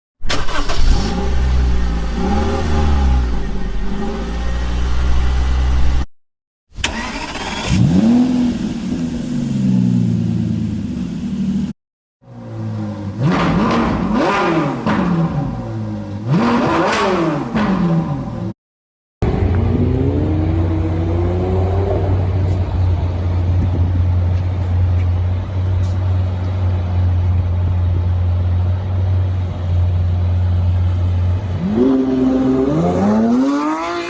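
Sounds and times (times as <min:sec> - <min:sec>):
car engine revving: 0:06.8 - 0:11.7, 0:19.2 - 0:34.0.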